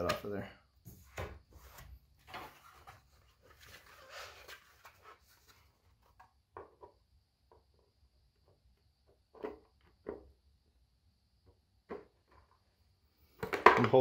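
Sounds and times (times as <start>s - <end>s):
faint plastic rustling: 0.9s - 6.3s.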